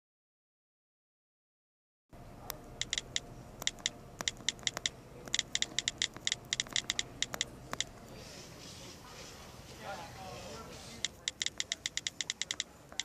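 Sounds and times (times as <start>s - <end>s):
typing on a keyboard: 2.8s - 7.9s, 11.0s - 13.0s.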